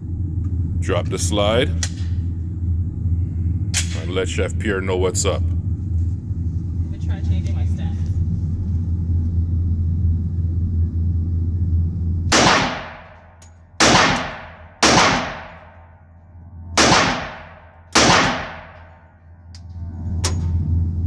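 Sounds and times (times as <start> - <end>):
steady low hum: 0.0 - 21.0
pistol shots echoing: 12.3 - 13.2, 13.8 - 15.8, 16.8 - 19.0.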